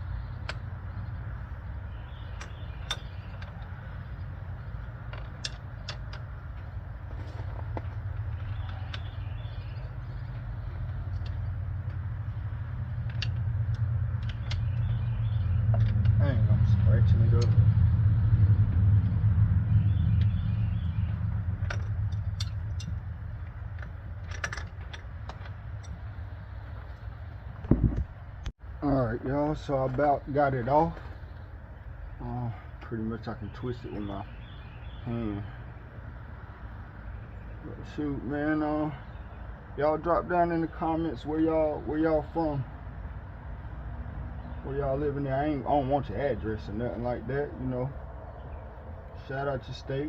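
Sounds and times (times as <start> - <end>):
steady low rumble: 0.0 - 50.0
hand tools clicking and tapping: 9.8 - 15.0.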